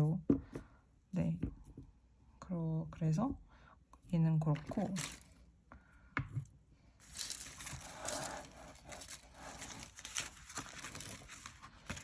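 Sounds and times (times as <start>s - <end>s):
paper rustling and crackling: 7.0s - 12.0s.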